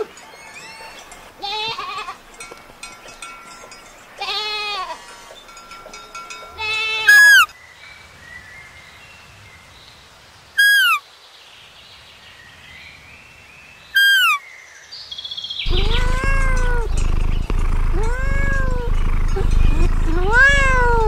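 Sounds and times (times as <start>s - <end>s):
loud sound with low hum: 15.7s - 21.0s.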